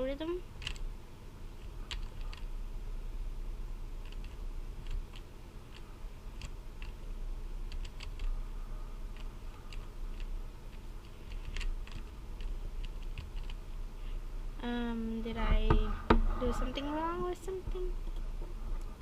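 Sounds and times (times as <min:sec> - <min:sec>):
speed cube clicking as turned: 0:00.6 - 0:00.9, 0:01.6 - 0:02.5, 0:04.0 - 0:07.0, 0:07.6 - 0:08.3, 0:09.1 - 0:13.6.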